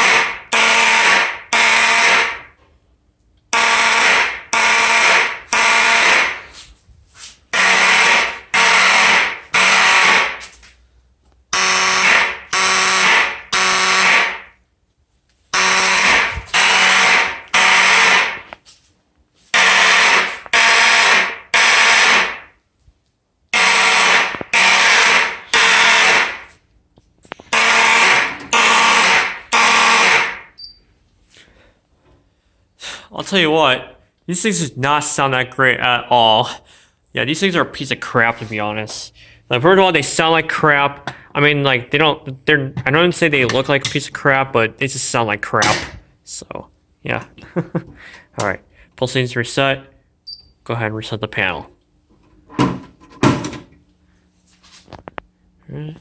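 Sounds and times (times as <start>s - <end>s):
raspy fire alarm horns: 0.0s - 2.6s, 3.5s - 6.6s, 7.5s - 10.6s, 11.5s - 14.6s, 15.5s - 18.6s, 19.4s - 22.6s, 23.5s - 26.6s, 27.3s - 30.6s.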